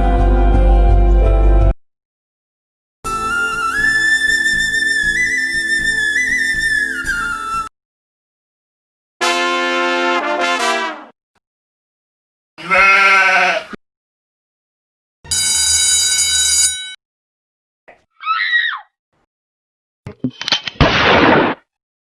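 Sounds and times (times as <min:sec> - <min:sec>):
high wavering squeak: 0:03.4 - 0:07.6.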